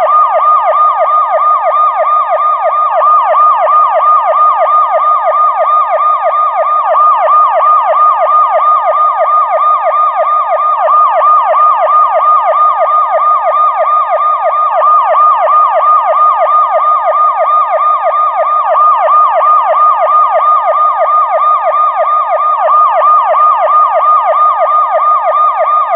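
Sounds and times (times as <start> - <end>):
police siren yelping: 0.0 - 25.9.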